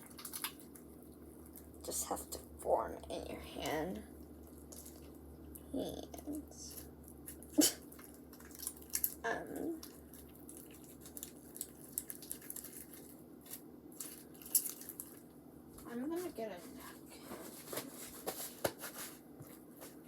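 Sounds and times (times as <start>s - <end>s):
slime squelching in hands: 0.0s - 15.3s.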